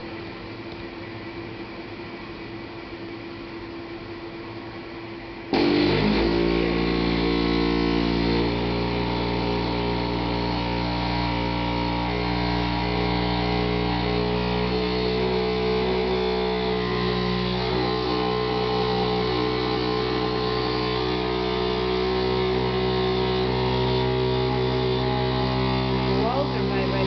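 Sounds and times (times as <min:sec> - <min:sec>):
pipes droning buzz: 0:05.5 - 0:27.0.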